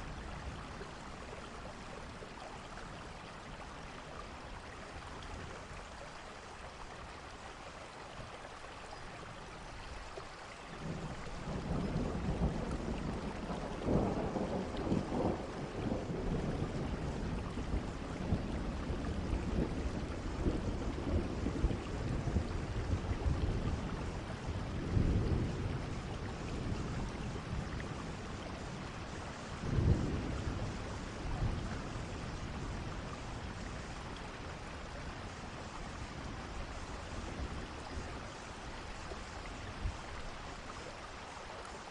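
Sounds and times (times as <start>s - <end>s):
heavy rain: 0.0s - 41.9s
rolling thunder: 10.8s - 38.4s.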